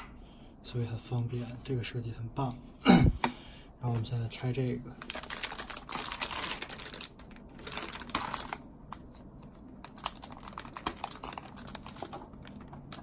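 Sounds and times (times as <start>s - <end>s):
packaging rustling and crinkling: 5.0s - 13.0s.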